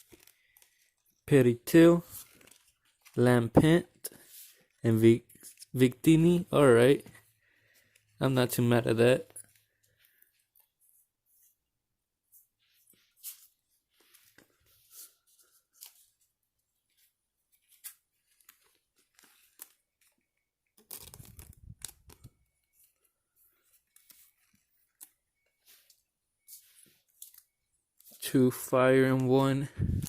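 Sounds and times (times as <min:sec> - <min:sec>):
cards sliding and rustling: 0:02.0 - 0:05.8, 0:12.3 - 0:16.3, 0:16.9 - 0:20.2, 0:20.8 - 0:30.0.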